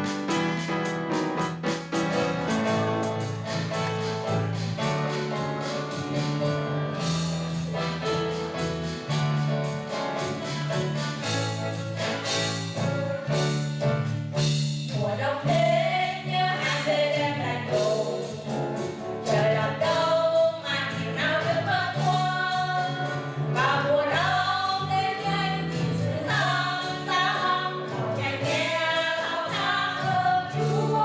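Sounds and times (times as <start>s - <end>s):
piano accompaniment: 0.0s - 31.0s
women singing church song: 15.0s - 18.6s, 19.2s - 31.0s.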